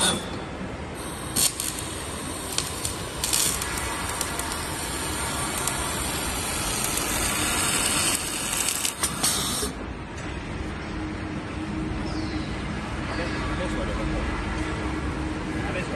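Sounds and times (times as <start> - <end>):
low machine hum: 0.0 - 9.1
welding hissing and crackling: 0.9 - 9.8.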